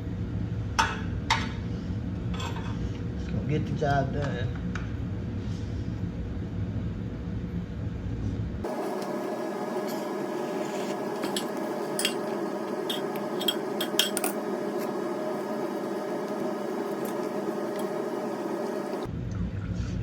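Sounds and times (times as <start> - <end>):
steady hum: 8.6 - 19.1.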